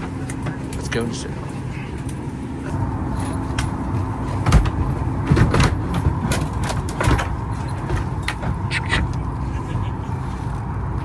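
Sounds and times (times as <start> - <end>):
aircraft cabin hum: 0.0 - 11.0
knocks and rattles: 4.4 - 9.1.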